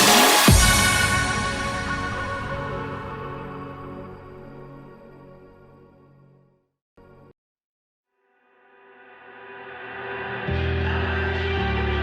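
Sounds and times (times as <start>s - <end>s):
background music sustained tones: 0.0s - 7.2s.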